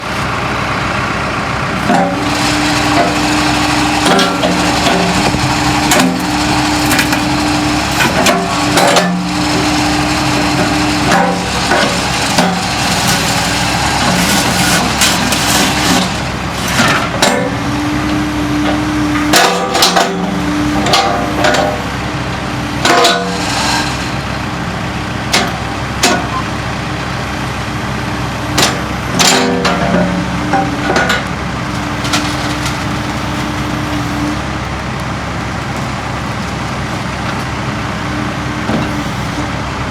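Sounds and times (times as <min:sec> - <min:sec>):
excavator diesel engine running: 0:00.0 - 0:39.9
sharp metallic clanks and knocks: 0:22.8 - 0:23.4, 0:28.5 - 0:31.3.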